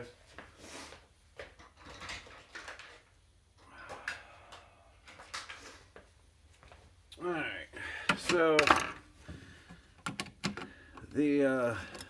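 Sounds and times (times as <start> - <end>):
objects being handled: 8.1 - 12.0.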